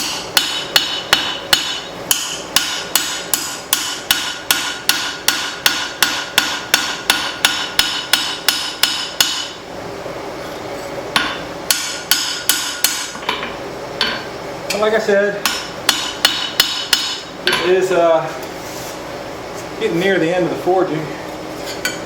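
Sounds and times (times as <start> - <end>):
hammer ringing on anvil: 0.0 - 9.6, 11.2 - 13.2, 15.4 - 17.7.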